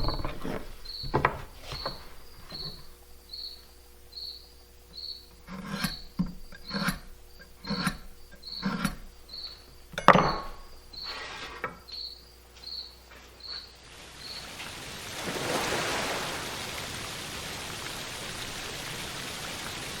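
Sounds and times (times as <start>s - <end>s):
wooden boards knocking: 0.0s - 2.7s, 10.0s - 10.6s
insect chirping: 0.0s - 20.0s.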